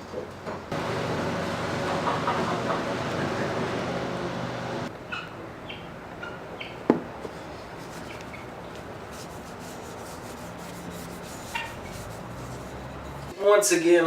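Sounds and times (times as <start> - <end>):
abrasive tool rubbing wood: 7.2 - 13.3.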